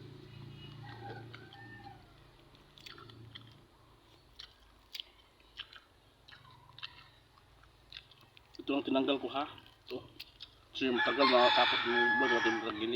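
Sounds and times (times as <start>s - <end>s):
person chewing crunchy bones: 0.6s - 10.8s
mouth clicks: 2.7s - 8.7s.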